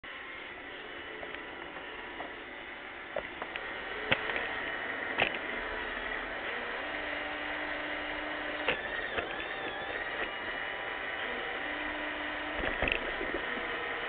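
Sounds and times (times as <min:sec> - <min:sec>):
robot vacuum motor whir: 0:00.1 - 0:14.0
sharp clicks and knocks: 0:03.1 - 0:10.5, 0:11.2 - 0:14.0.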